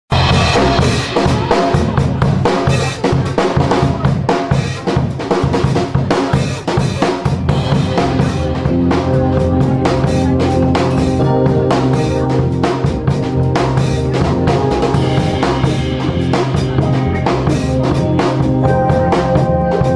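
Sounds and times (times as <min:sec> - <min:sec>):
bass line: 0:00.1 - 0:19.9
drum kit beat: 0:00.1 - 0:19.9
pop-rock band playing: 0:00.1 - 0:19.9
sustained chords: 0:07.5 - 0:19.9.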